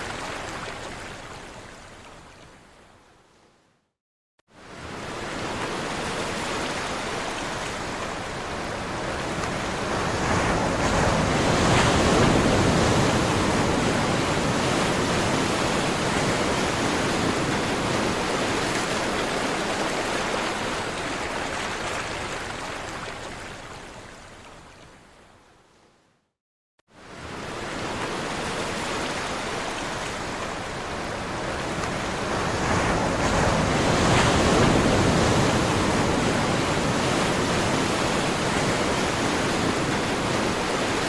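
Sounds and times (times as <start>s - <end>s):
waves breaking: 27.0s - 41.0s.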